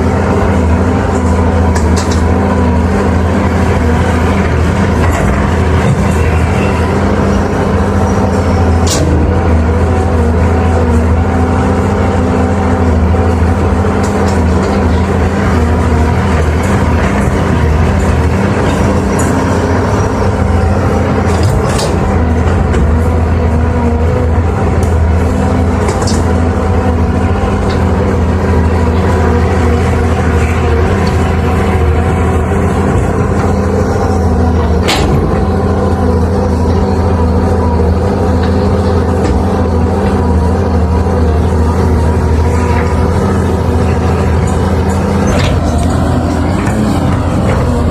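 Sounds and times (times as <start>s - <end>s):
diesel engine running: 0.0s - 47.9s.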